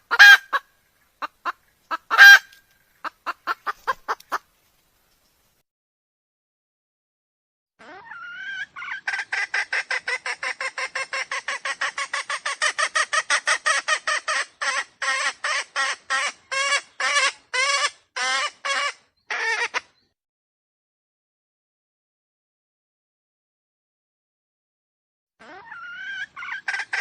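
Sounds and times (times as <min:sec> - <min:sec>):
junglefowl harsh rapid calls: 0:00.0 - 0:04.4, 0:07.8 - 0:19.9, 0:25.4 - 0:27.0.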